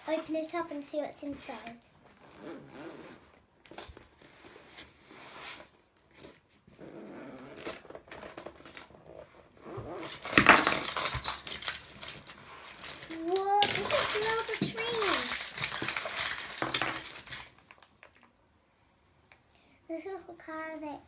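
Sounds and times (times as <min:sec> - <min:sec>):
packaging rustling and crinkling: 0:10.2 - 0:18.0.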